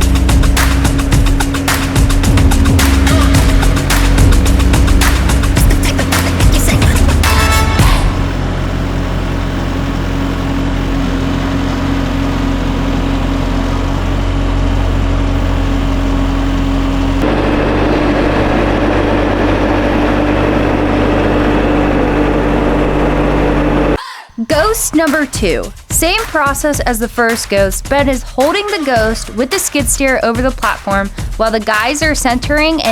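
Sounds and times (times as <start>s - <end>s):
skid steer engine running: 0.0s - 24.0s.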